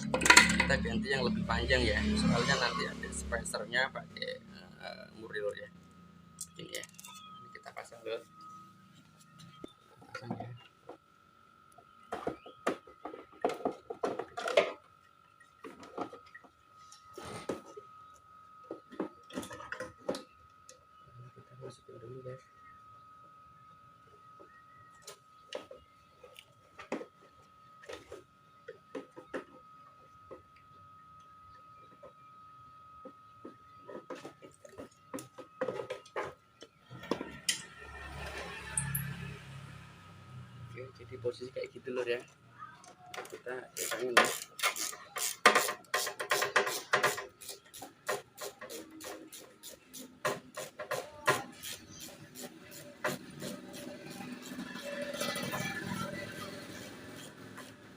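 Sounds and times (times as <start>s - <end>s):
metal parts clicking and knocking: 0.0s - 0.9s, 42.8s - 49.4s
faint steady high tone: 0.0s - 10.6s.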